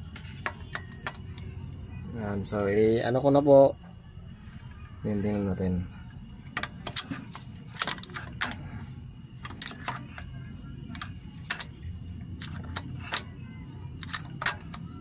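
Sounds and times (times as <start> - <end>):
low steady hum: 0.0 - 15.0
hand tools clicking on metal: 10.9 - 11.7, 12.4 - 13.3, 14.0 - 14.8.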